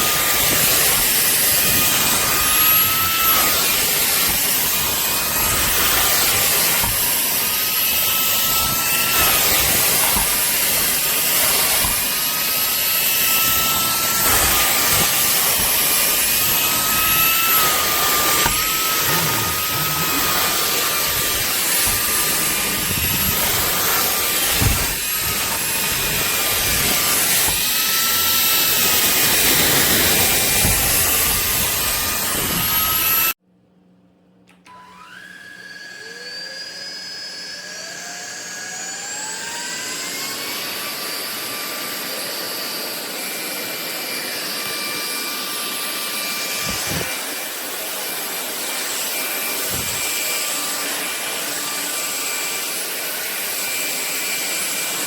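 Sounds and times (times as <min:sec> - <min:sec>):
stick vacuum motor whining: 0:00.0 - 0:33.4, 0:34.5 - 0:55.0.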